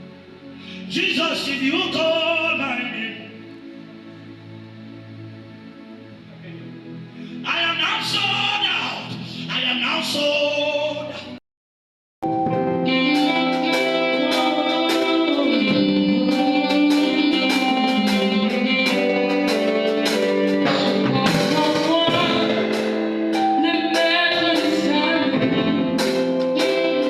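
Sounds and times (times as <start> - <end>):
person singing: 0.7 - 3.6, 6.4 - 11.4, 12.3 - 27.0
instrumental backing with beat: 12.2 - 27.0.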